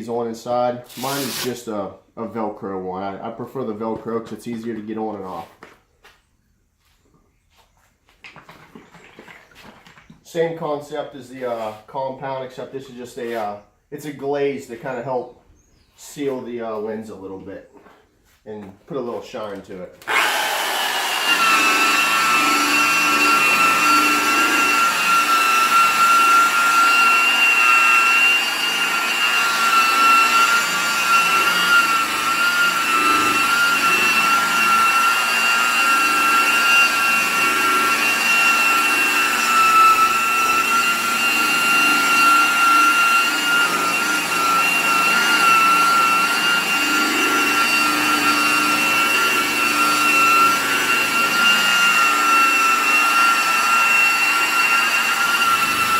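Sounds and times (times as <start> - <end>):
electric buffer motor whining: 0.9 - 1.5, 20.0 - 55.9.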